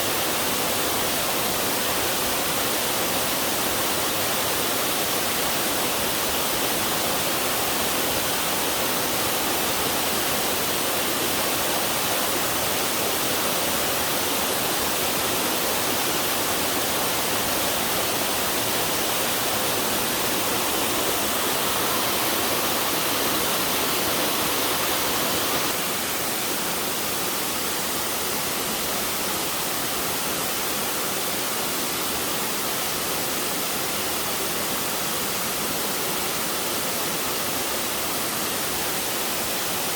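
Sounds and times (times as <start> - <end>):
waterfall pouring: 7.1 - 26.1.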